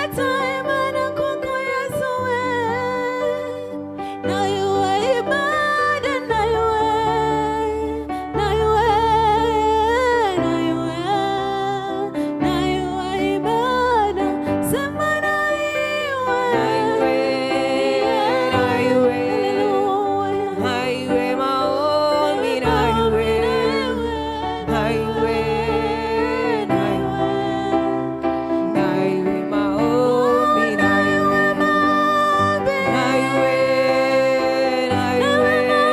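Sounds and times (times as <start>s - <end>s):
person singing long held notes: 15.2s - 35.9s.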